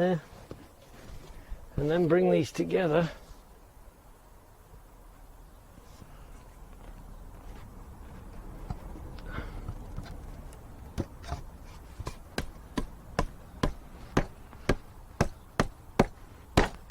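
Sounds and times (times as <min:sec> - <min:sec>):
handling glued wooden parts: 0:05.9 - 0:16.9
sharp knocks on wooden joint: 0:11.0 - 0:16.9.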